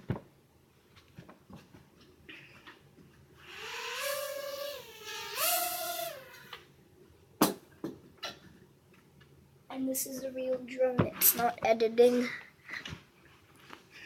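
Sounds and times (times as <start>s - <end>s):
toy drone motors whining: 3.4s - 6.6s.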